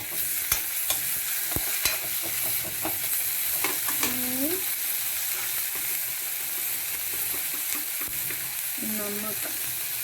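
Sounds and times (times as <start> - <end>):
utensil scraping against pan: 0.0 - 4.2
onions sizzling in hot oil: 0.0 - 10.0.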